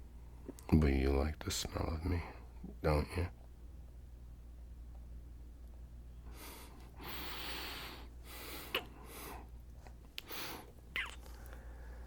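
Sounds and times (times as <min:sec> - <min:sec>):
man breathing: 0:06.2 - 0:09.6, 0:10.2 - 0:12.0
mouth clicks: 0:08.6 - 0:09.0, 0:10.9 - 0:11.4.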